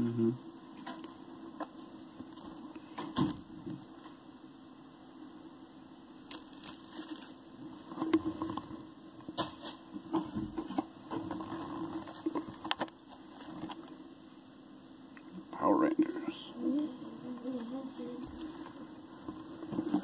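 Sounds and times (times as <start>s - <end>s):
packaging rustling and crinkling: 6.3s - 7.4s.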